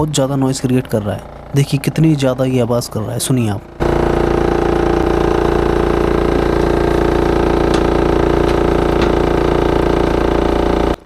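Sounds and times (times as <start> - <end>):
refrigerator fan fluttering drone: 0.0 - 11.0.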